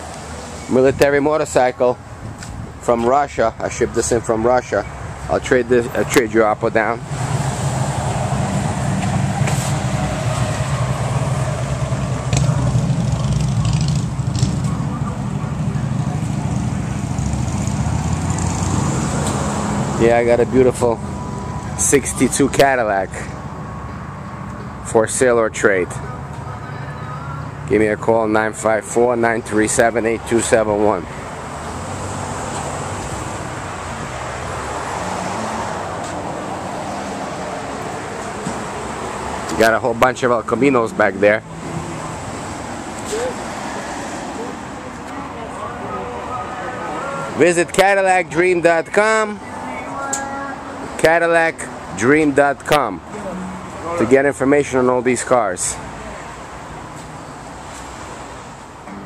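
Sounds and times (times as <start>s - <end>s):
road traffic noise: 0.0s - 59.0s
engine running with low rumble: 7.2s - 19.5s.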